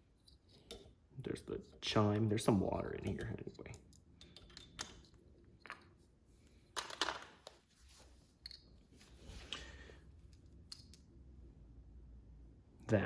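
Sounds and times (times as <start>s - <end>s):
plastic parts clattering: 6.7s - 7.6s
plastic parts clicking: 6.7s - 7.6s.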